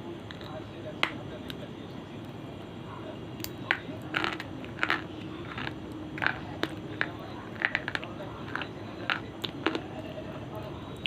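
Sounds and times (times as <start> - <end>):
person chewing crunchy pencil: 3.4 - 11.0.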